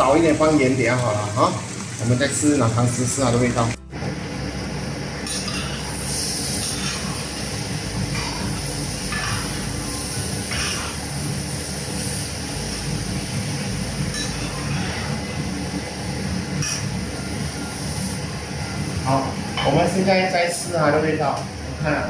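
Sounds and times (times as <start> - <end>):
rice sizzling in a wok: 4.1 - 21.9
metal spatula scraping a wok: 10.5 - 11.0.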